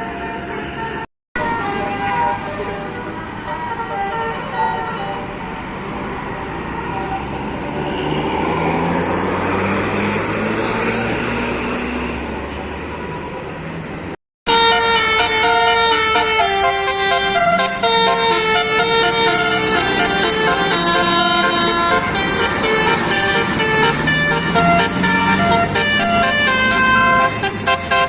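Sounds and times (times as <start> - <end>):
musical bus horn tune: 0.0 - 5.4, 14.5 - 28.0
bus engine passing: 0.0 - 28.0.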